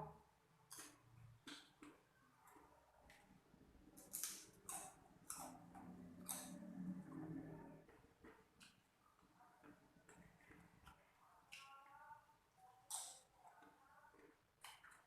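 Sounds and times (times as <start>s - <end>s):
chewing crunchy chips: 4.0s - 7.6s.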